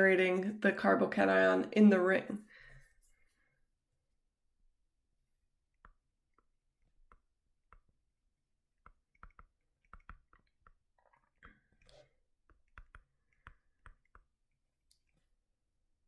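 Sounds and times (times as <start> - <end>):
faint sharp clicks and taps: 8.8 - 15.3.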